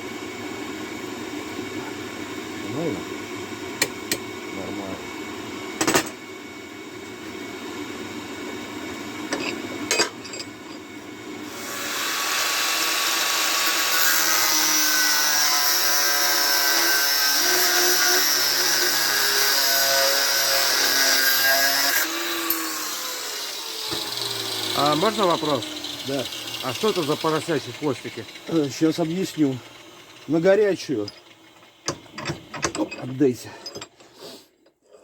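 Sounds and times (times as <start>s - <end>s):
electric power tool whining: 15.8s - 32.6s.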